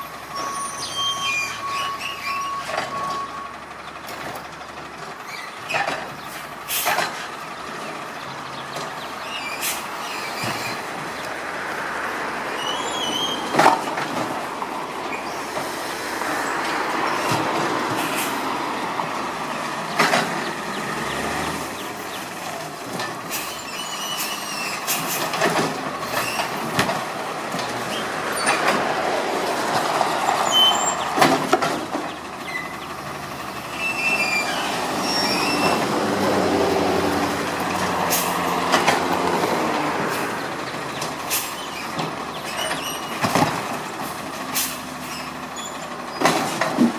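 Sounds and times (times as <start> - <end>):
garbage truck engine running: 0.0 - 46.9
high metal squeals: 0.2 - 3.4, 12.5 - 13.5, 23.3 - 25.1, 30.4 - 31.1, 33.7 - 35.8.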